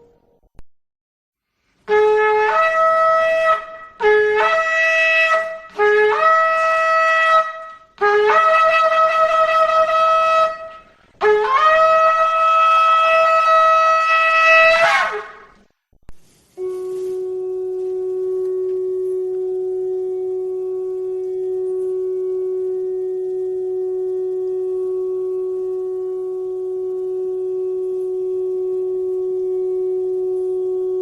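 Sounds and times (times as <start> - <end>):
ram's horn blasts: 16.6 - 31.0.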